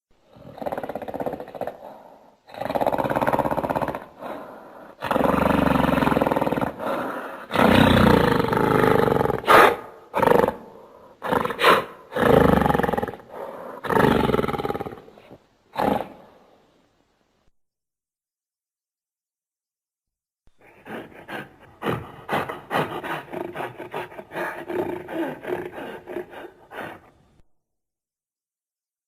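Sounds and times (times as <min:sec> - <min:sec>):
gorilla-like roars and grunts: 0:00.3 - 0:16.4, 0:20.6 - 0:27.1.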